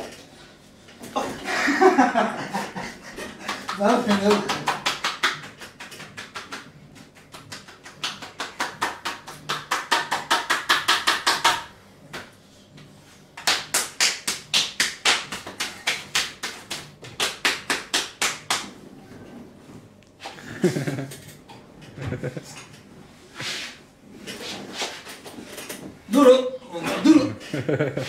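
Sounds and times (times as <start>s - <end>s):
rapid hand slaps on body: 3.4s - 12.3s, 13.4s - 18.7s.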